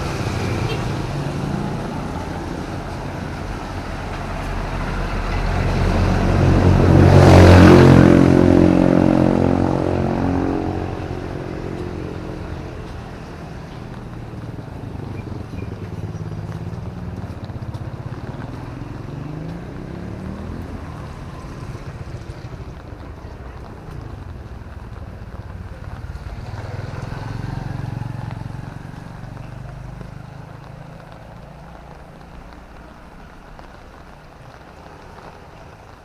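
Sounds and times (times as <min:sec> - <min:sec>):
tyre hiss on wet road: 0:00.0 - 0:07.4, 0:08.2 - 0:36.0
vehicle engine passing: 0:00.0 - 0:36.0.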